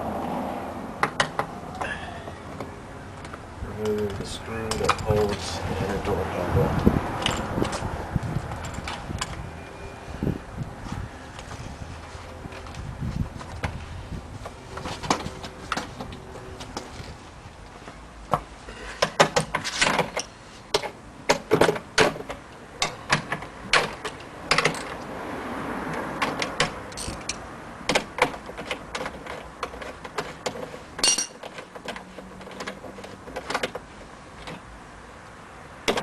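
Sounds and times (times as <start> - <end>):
hand tools clicking and clattering: 1.0 - 5.6, 26.2 - 34.7
rustling noise: 6.7 - 20.7.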